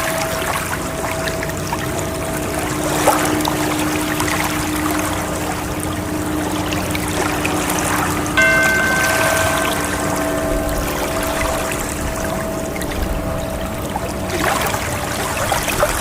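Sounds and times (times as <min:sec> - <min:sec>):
sustained ringing tones: 0:00.0 - 0:16.0
ocean waves rushing: 0:07.4 - 0:16.0
bell-like tone ringing: 0:08.3 - 0:16.0.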